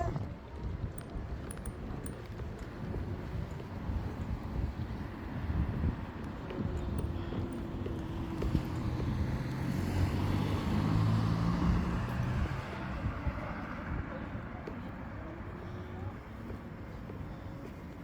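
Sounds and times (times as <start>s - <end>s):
wind buffeting microphone: 0.0s - 18.0s
car passing: 7.7s - 14.1s.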